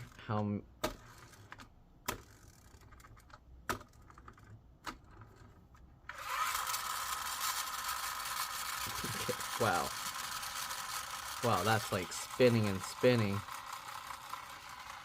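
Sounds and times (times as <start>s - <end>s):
pull-back motor whirring: 6.1s - 15.0s
toy handling clicks: 6.1s - 15.0s.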